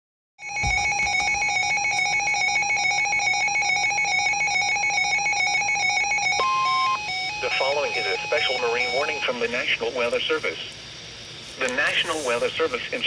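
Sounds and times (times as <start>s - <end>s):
trilling electronic alert tone: 0.4s - 9.4s.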